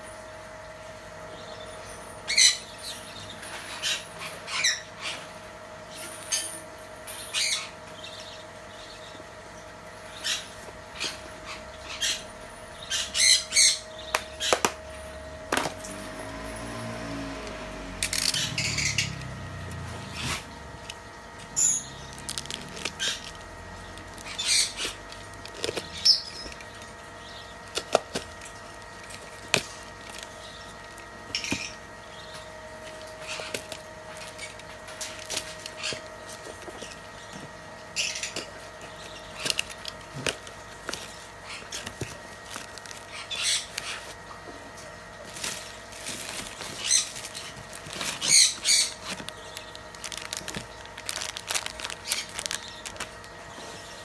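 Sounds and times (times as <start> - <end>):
faint steady hum: 0.0 - 54.0
packaging rustling and crinkling: 22.0 - 27.0, 27.6 - 31.2, 32.8 - 37.1, 39.3 - 44.2, 45.2 - 53.9.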